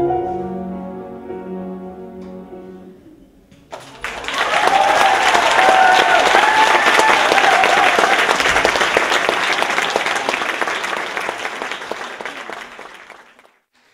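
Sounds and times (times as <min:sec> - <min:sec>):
audience applauding: 0:03.7 - 0:13.9.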